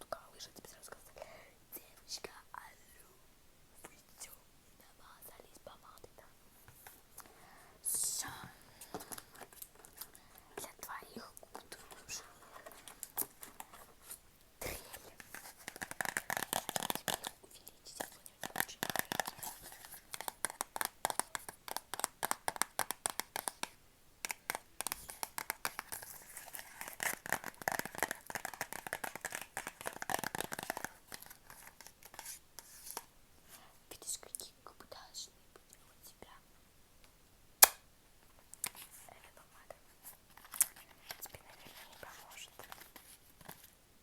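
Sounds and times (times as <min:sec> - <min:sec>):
hands tapping and crinkling objects: 0:08.0 - 0:33.1, 0:37.0 - 0:43.8.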